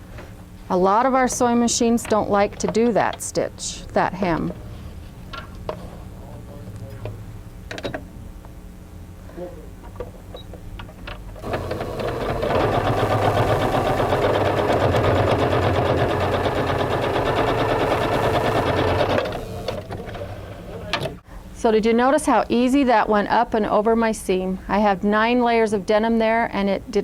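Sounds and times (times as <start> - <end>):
sewing machine stitching: 11.4 - 20.8.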